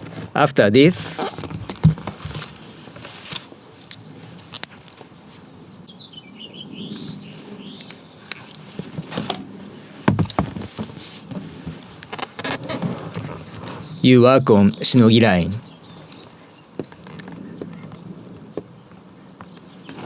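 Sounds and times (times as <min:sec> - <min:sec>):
bird twittering: 0:05.2 - 0:08.4, 0:15.0 - 0:18.1.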